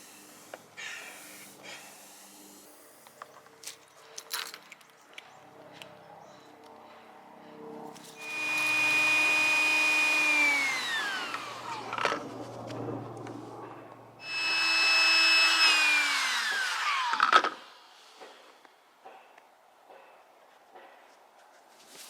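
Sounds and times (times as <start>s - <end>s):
small electric motor whining: 0.0s - 3.2s, 7.9s - 12.4s, 14.2s - 17.9s.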